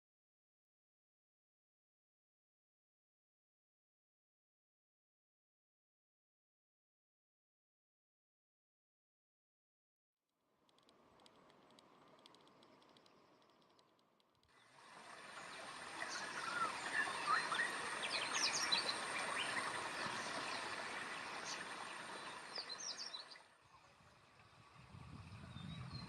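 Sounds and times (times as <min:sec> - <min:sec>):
background hiss: 0:14.6 - 0:25.6
birds chirping and whistling: 0:15.4 - 0:23.4.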